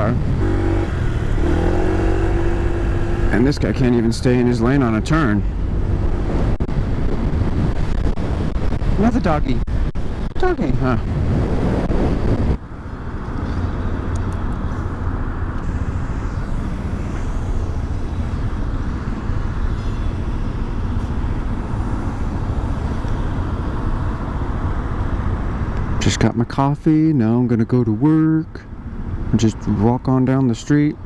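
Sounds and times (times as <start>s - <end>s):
motorcycle engine running: 0.0s - 4.1s, 12.6s - 25.4s
wind noise on microphone: 0.0s - 26.0s
road and traffic noise: 0.0s - 31.0s.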